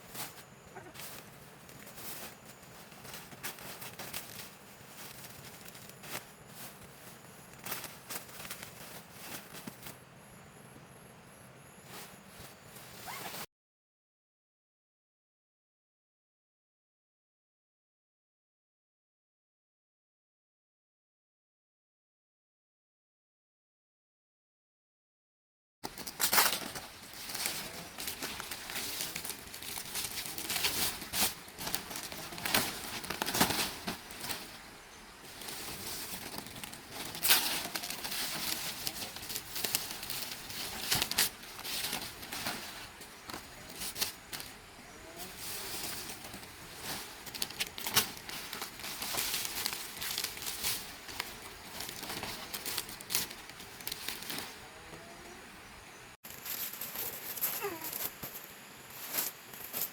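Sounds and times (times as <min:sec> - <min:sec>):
dry palm leaves rustling: 0:00.0 - 0:10.0, 0:25.8 - 0:55.0, 0:56.2 - 0:59.9
leaves snapping: 0:25.9 - 0:34.7, 0:35.3 - 0:44.6, 0:45.8 - 0:54.6.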